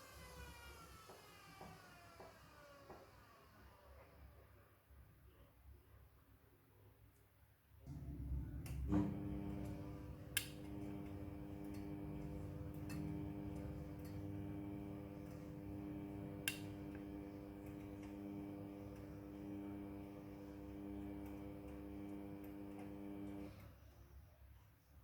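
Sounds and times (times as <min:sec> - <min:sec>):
washing machine hum: 0:07.8 - 0:24.0.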